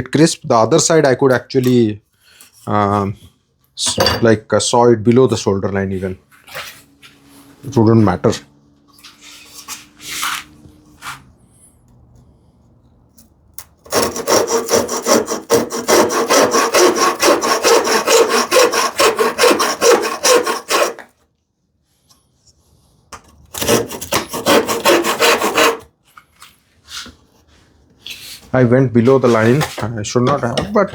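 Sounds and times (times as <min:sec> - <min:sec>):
handsaw cutting wood: 0:13.8 - 0:21.2, 0:23.5 - 0:25.9.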